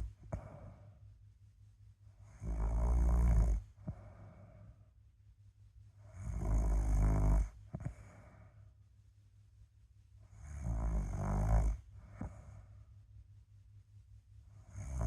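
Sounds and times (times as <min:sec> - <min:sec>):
soft breathing: 0:00.0 - 0:02.4, 0:03.6 - 0:06.4, 0:07.4 - 0:10.5, 0:11.7 - 0:13.1
person snoring: 0:02.3 - 0:04.1, 0:06.2 - 0:08.3, 0:10.4 - 0:12.6, 0:14.7 - 0:15.0.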